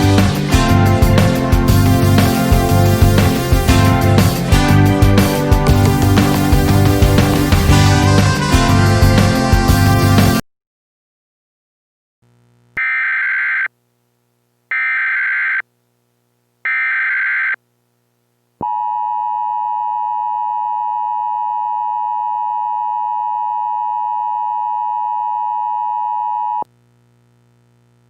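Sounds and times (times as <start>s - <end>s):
steady alert tone: 0.1s - 8.0s.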